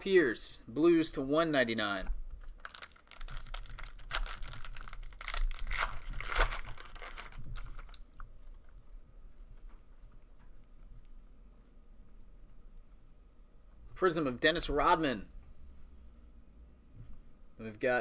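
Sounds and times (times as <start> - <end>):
soft handling of cards: 1.9 - 14.0
wrapper tearing and crinkling: 2.4 - 8.2.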